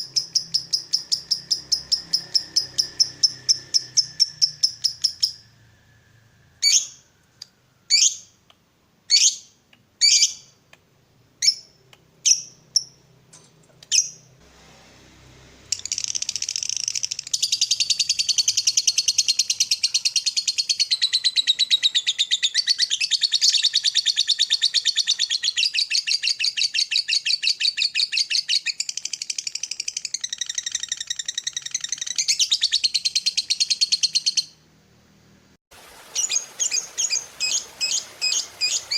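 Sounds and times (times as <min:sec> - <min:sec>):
lovebird chattering trill: 0:00.0 - 0:05.4, 0:15.8 - 0:34.5
lovebird chirping: 0:00.0 - 0:08.4, 0:09.1 - 0:10.6, 0:11.4 - 0:13.1, 0:13.8 - 0:14.3, 0:15.6 - 0:34.6, 0:36.0 - 0:38.9.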